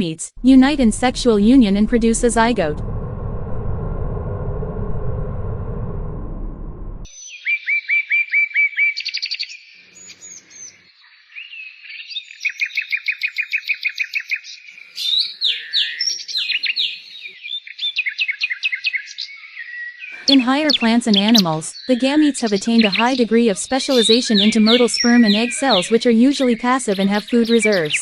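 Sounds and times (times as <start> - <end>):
songbird chirping and trilling: 7.1 - 28.0.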